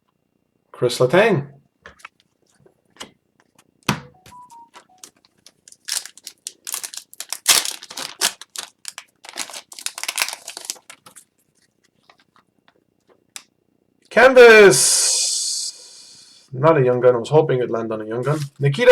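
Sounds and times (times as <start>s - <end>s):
foil wrapper tearing and crinkling: 5.0s - 11.3s.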